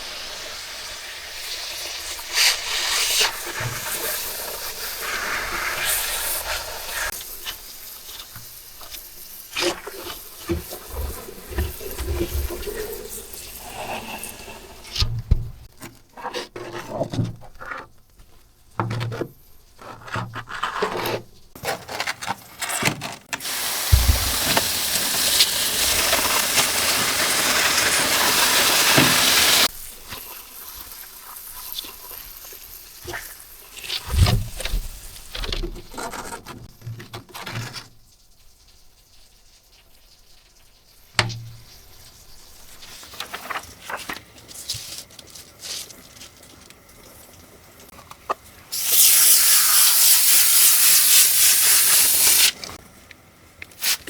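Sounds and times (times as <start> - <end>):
loud steady hiss: 23.4 - 35.6, 48.7 - 52.8.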